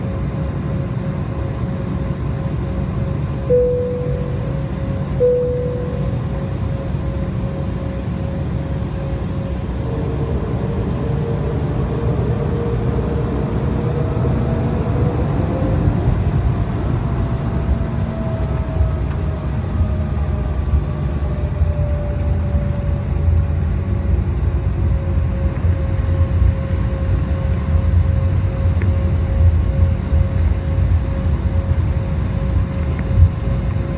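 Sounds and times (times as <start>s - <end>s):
jet engine tone: 0.0s - 15.7s
airliner cabin rumble: 0.0s - 33.9s.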